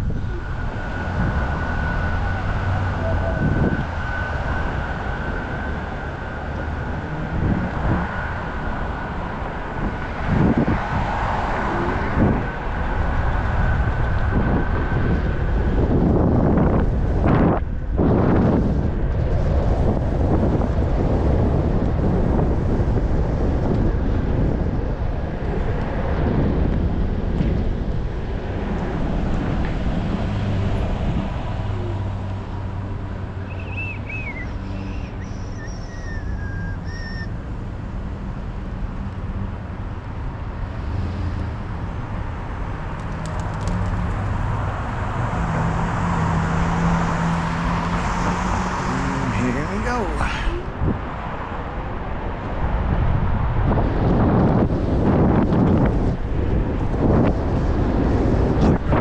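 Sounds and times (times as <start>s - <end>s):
city traffic engines humming: 0.0s - 59.0s
wind buffeting microphone: 0.0s - 59.0s.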